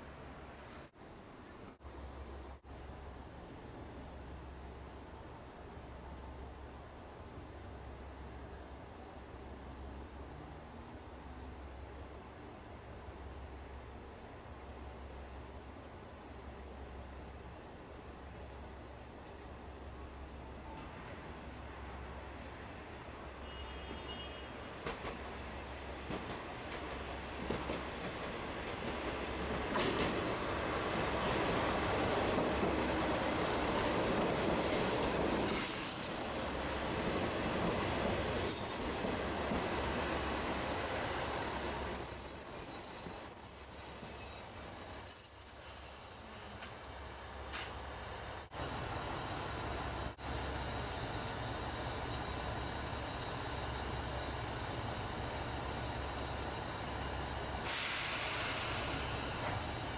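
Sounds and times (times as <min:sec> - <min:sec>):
diesel train on rails: 0:00.0 - 0:59.9
high wheel squeal: 0:38.1 - 0:47.4.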